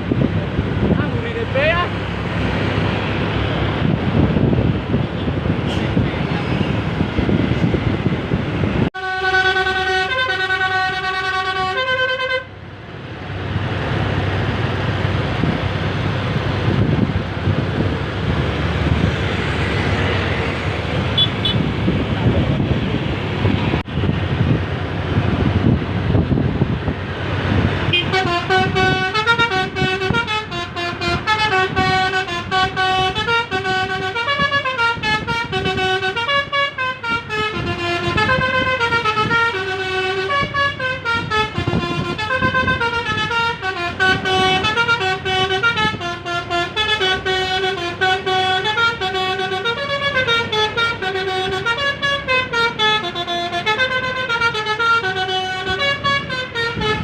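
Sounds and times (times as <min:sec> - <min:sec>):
multi-tone bus horn tune: 0:09.0 - 0:12.6, 0:21.0 - 0:21.8, 0:27.8 - 0:57.0.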